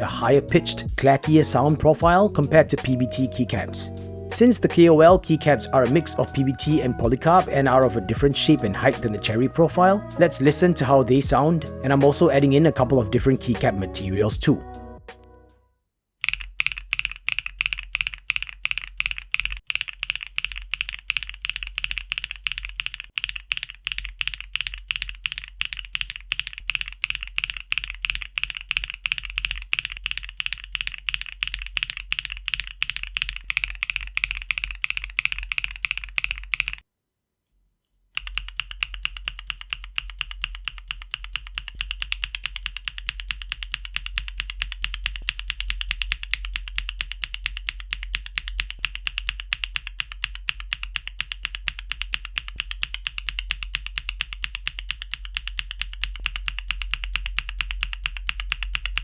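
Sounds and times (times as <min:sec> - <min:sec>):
fast typing on mechanical keyboard: 0:16.2 - 0:36.8, 0:38.2 - 0:59.0.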